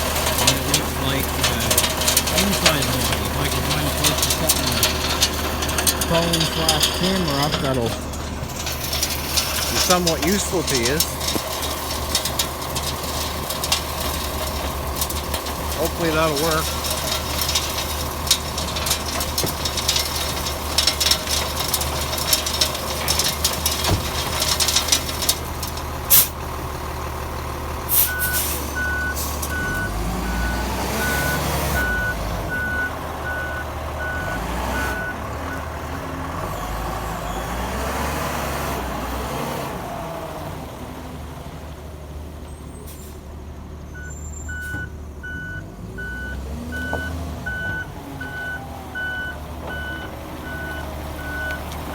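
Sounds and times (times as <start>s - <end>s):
conveyor carrying crushed rock: 0.0s - 51.9s
diesel engine running: 0.0s - 51.9s
reversing alarm beeping: 28.0s - 35.7s, 44.0s - 51.6s.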